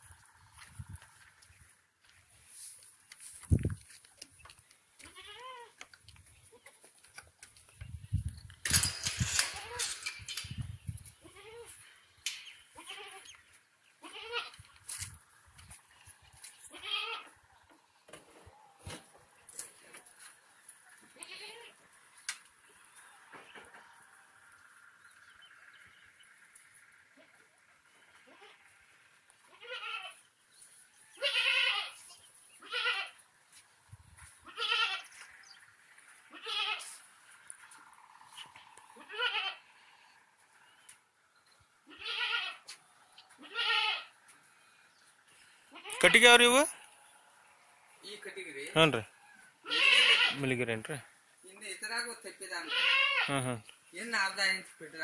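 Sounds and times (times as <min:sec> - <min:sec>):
goats bleating: 0:05.0 - 0:05.8, 0:12.7 - 0:13.4, 0:14.0 - 0:14.6, 0:16.6 - 0:17.4, 0:21.2 - 0:21.8, 0:29.4 - 0:30.2, 0:31.2 - 0:33.2, 0:34.4 - 0:35.2, 0:36.2 - 0:37.0, 0:39.0 - 0:39.7, 0:41.8 - 0:44.2, 0:45.7 - 0:46.2, 0:49.6 - 0:50.4, 0:52.6 - 0:53.5.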